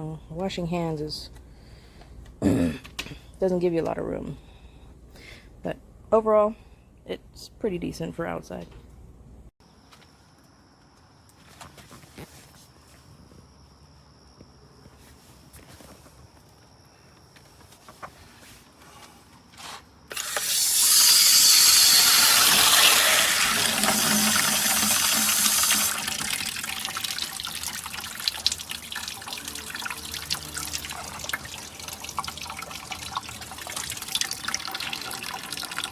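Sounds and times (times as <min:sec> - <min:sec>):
tap water running into basin: 0:20.1 - 0:35.9
water drips: 0:24.5 - 0:35.9.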